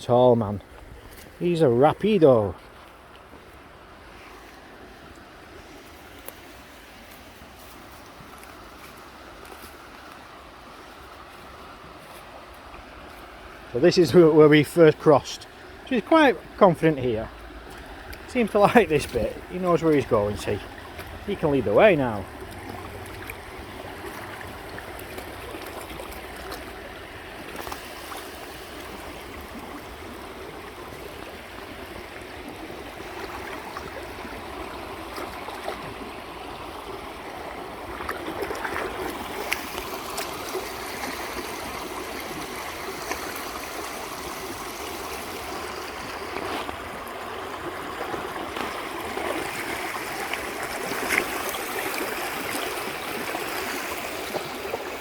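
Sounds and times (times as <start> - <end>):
water rushing over rocks: 9.1 - 55.0.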